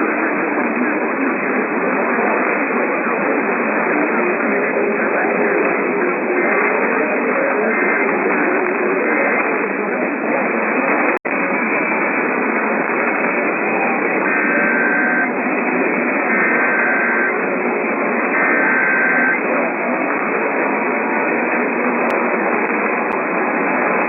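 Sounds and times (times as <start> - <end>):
radio static hiss: 0.0 - 24.0
faint tones: 12.8 - 21.9.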